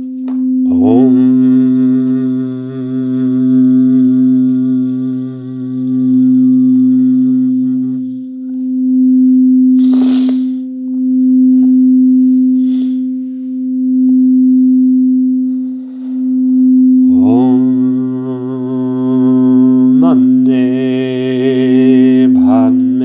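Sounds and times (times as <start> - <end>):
low chanting voice: 0.5 - 13.4, 17.0 - 23.0
soft hisses: 9.8 - 10.6.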